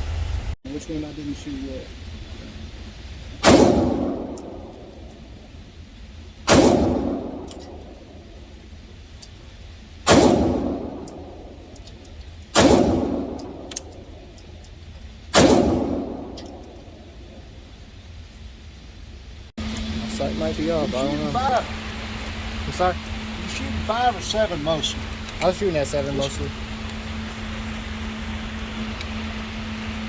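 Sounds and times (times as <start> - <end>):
pistol shots with echo: 3.4 - 5.1, 6.5 - 8.2, 10.1 - 11.6, 12.5 - 14.3, 15.3 - 16.9.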